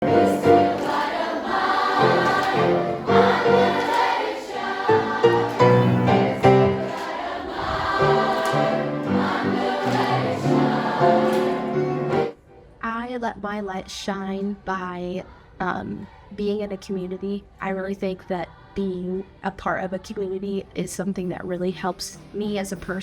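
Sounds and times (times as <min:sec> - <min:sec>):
girls' choir singing: 0:00.0 - 0:12.4.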